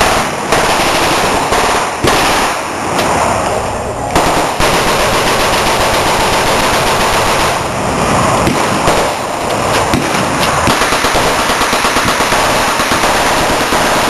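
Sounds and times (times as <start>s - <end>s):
automatic gunfire: 0.0s - 2.7s, 4.2s - 7.7s, 8.4s - 14.0s.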